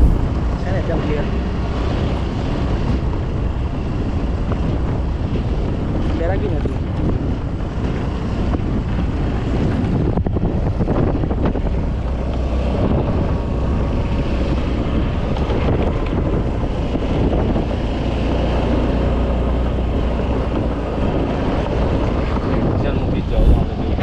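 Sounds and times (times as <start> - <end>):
wind buffeting microphone: 0.0 - 1.5, 19.9 - 24.0.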